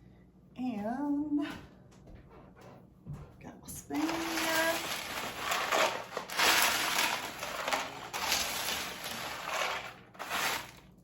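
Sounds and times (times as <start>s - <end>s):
spoon scooping crunchy snack mix: 4.0s - 10.9s.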